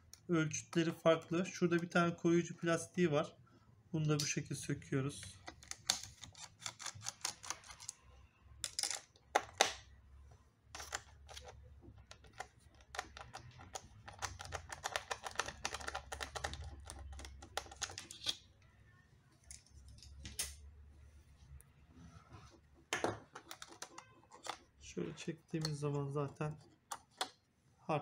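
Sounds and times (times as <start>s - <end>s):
small parts clicking and scraping: 8.6s - 9.2s.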